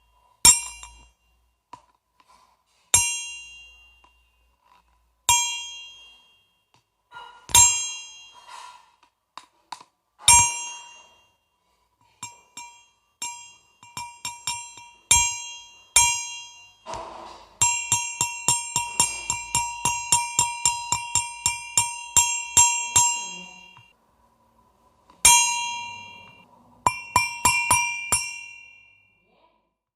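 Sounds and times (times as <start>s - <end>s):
bell ringing: 17.6s - 23.9s, 25.2s - 29.2s.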